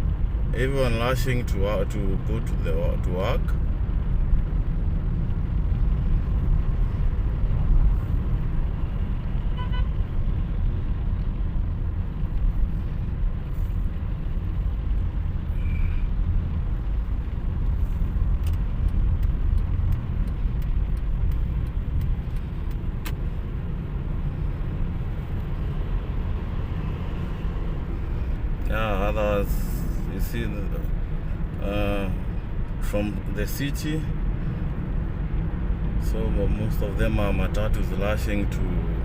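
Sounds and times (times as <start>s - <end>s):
car interior driving rumble: 0.0s - 39.0s
faint clicks: 18.4s - 23.3s.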